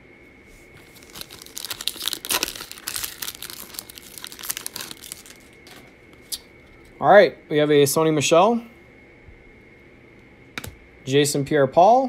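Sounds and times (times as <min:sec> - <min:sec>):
card pack wrapper tearing and crinkling: 0:00.8 - 0:06.4.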